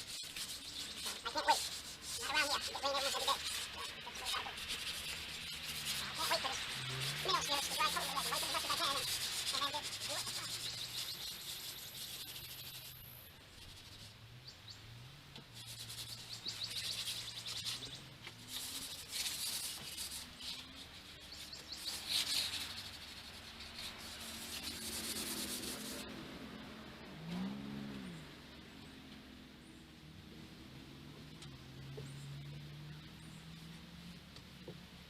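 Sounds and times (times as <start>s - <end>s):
hand rubbing wooden railing: 0.0s - 14.1s, 15.5s - 26.0s
birds chirping faintly: 0.0s - 24.8s.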